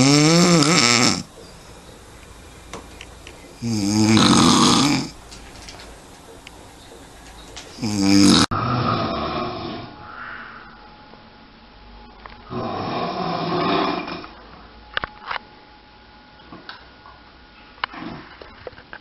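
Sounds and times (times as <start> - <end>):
person snoring: 0.0 - 1.3, 3.6 - 5.2, 7.8 - 10.0.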